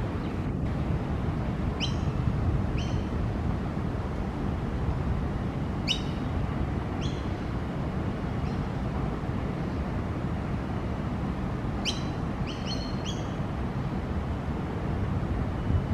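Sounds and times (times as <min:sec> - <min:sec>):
low rumble of wind or traffic: 0:00.0 - 0:15.9
young magpie squeaky calls: 0:01.8 - 0:02.1, 0:05.9 - 0:06.1, 0:07.0 - 0:07.2, 0:11.8 - 0:13.3.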